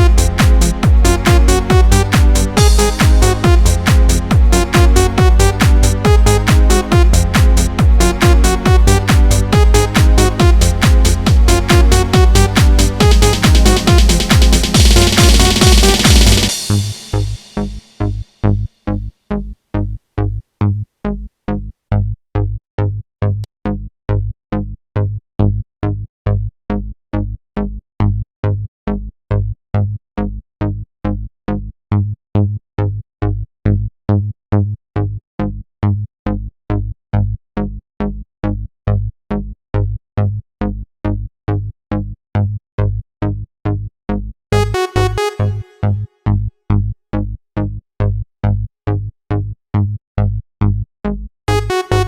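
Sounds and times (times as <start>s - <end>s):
synth sound: 0.0s - 17.8s, 44.6s - 46.0s
deep electronic beat: 0.0s - 18.2s, 44.6s - 45.7s, 51.5s - 52.0s.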